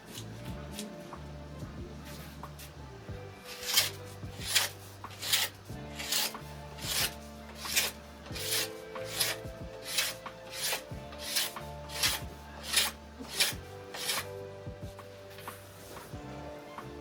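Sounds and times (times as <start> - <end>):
background music: 0.0 - 17.0
rhythmic rasping strokes: 0.0 - 17.0.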